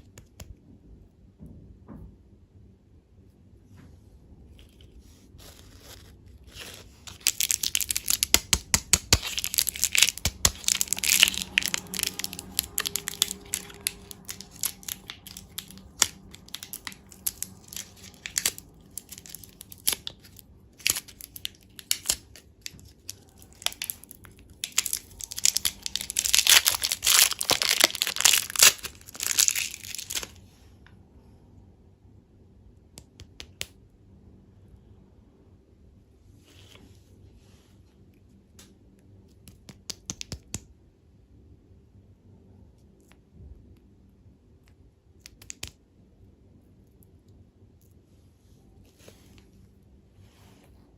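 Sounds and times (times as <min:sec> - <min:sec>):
candy wrappers crinkling: 0:04.6 - 0:30.4.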